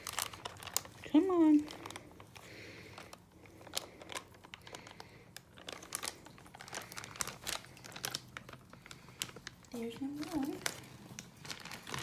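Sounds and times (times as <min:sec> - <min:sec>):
plastic bag crinkling: 0:00.0 - 0:12.0.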